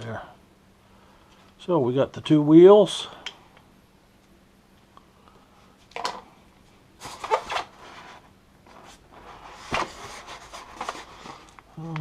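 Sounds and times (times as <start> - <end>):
packaging rustling and scraping: 7.0 - 11.6.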